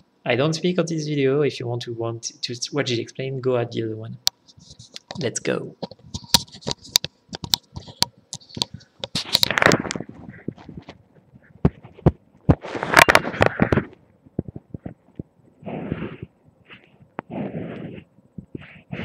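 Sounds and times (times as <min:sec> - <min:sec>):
scraping rubs on microphone: 0:04.5 - 0:05.0, 0:06.0 - 0:07.0, 0:07.7 - 0:19.0.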